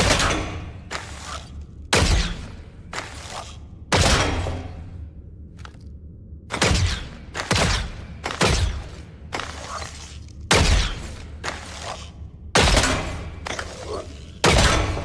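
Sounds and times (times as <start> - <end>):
bow and arrow shot: 0.0 - 4.8.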